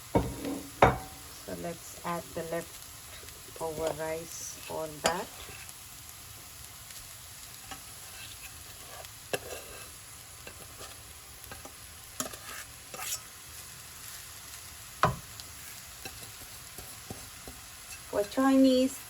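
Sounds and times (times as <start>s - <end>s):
food sizzling in a pan: 0.0s - 19.0s
spoon scraping and tapping pan: 0.1s - 1.2s, 5.0s - 5.6s, 7.6s - 13.3s, 16.0s - 18.4s.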